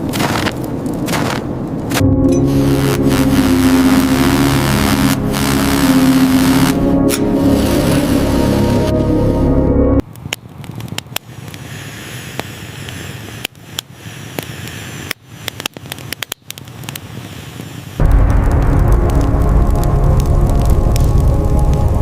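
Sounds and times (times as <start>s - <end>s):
campfire crackling and popping: 0.0s - 7.3s, 10.0s - 22.0s
background music: 2.0s - 10.0s, 18.0s - 22.0s.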